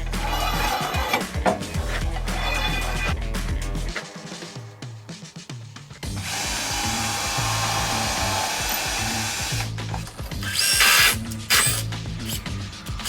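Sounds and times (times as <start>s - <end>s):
background music: 0.0s - 13.0s
power drill running: 6.1s - 13.0s.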